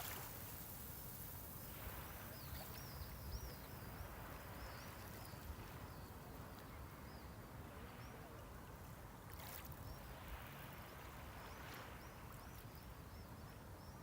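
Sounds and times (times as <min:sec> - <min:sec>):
sea waves washing ashore: 0:00.0 - 0:06.2.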